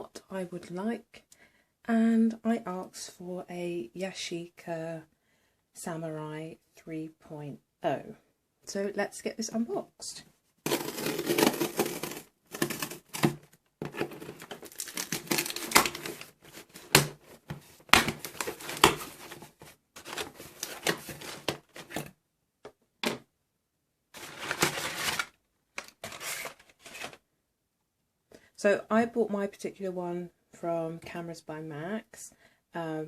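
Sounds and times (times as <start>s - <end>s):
paper packaging crinkling and tearing: 10.7s - 22.1s, 24.2s - 27.2s.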